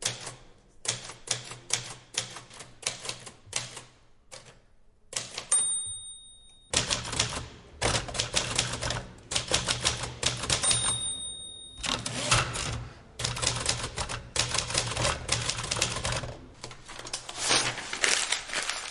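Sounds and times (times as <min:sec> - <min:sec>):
high ringing bell: 0:05.6 - 0:06.7, 0:10.6 - 0:12.1
typewriter keys clacking: 0:06.7 - 0:11.1, 0:11.8 - 0:17.2.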